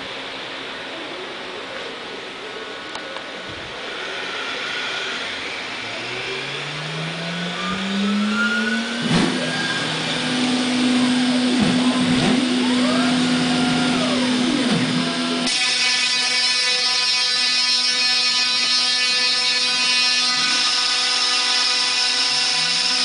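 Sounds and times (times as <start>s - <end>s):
router spindle whine: 2.2s - 23.0s
axis motors whining: 2.9s - 18.0s.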